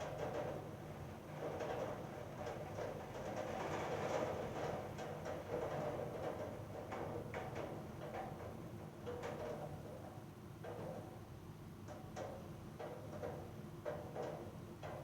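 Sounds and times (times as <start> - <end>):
rain pattering on a roof: 0.2 - 9.8.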